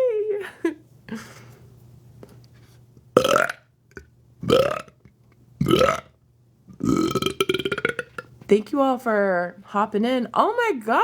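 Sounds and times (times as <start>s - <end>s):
woman burping: 3.2s - 3.6s, 4.5s - 5.0s, 5.6s - 6.1s, 6.8s - 8.3s.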